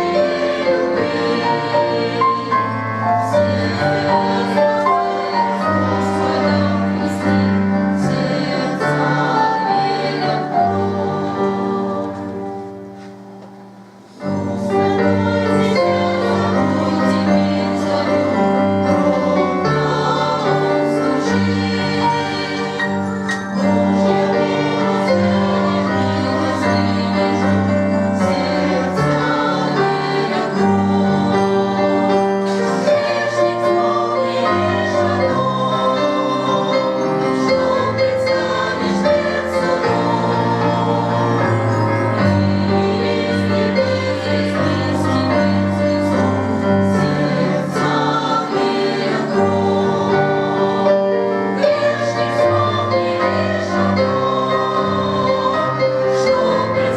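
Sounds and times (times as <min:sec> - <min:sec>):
church choir singing: 0:00.0 - 0:56.9.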